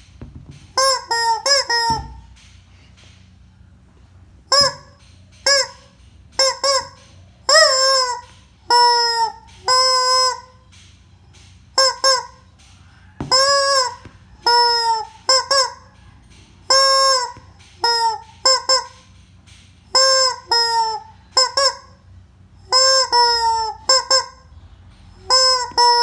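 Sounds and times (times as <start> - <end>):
rubber chicken toy squawking: 0.7 - 2.3, 4.5 - 10.6, 11.8 - 12.4, 13.1 - 16.0, 16.6 - 19.1, 19.9 - 24.5, 25.2 - 26.0.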